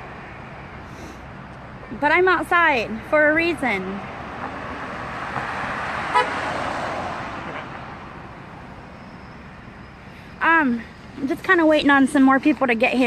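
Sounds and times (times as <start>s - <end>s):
car driving past: 4.0s - 10.2s
car horn toot: 6.1s - 6.5s.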